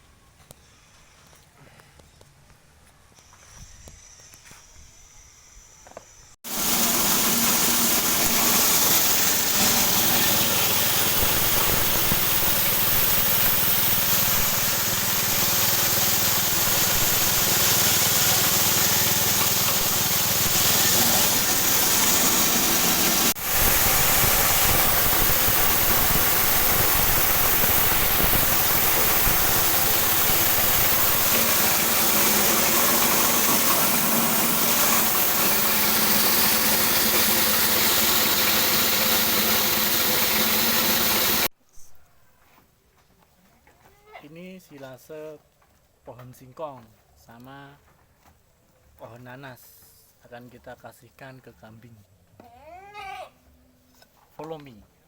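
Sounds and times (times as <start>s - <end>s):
feed chopper and hammer mill grinding: 6.5s - 41.5s.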